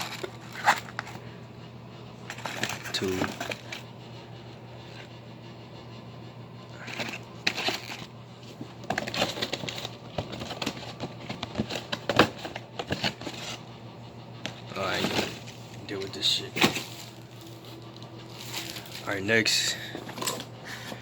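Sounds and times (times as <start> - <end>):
packaging rustling and crinkling: 0.0 - 1.2, 2.3 - 3.9, 6.8 - 13.7, 14.4 - 21.0
steady low hum: 0.0 - 21.0.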